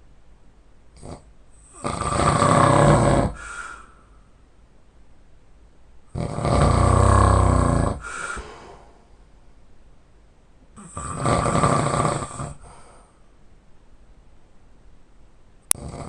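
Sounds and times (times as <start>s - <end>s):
person snoring loudly: 1.0s - 3.6s, 6.1s - 8.6s, 10.8s - 12.6s, 15.8s - 16.0s
soft breath: 3.3s - 4.5s, 7.2s - 9.5s, 12.4s - 13.4s.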